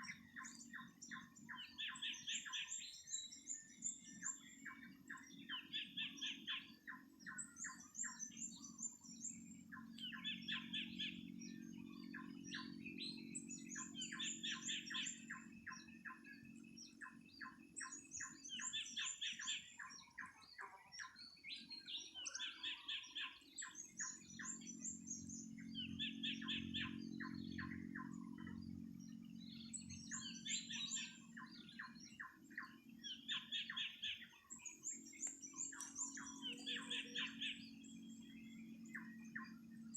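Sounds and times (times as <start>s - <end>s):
birds chattering calls: 0.0s - 39.9s
low steady hum: 21.8s - 39.9s.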